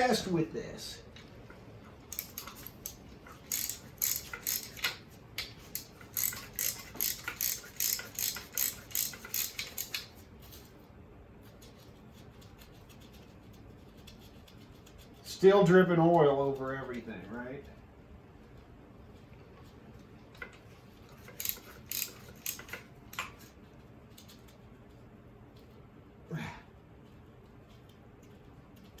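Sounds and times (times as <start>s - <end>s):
ratchet wrench clicking: 2.1s - 10.2s, 21.2s - 23.2s.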